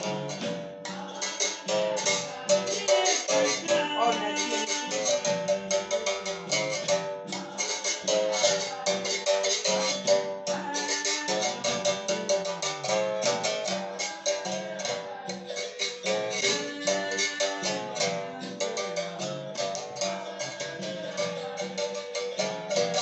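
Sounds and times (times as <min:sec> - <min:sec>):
steel-strung guitar strummed: 0:01.8 - 0:07.2.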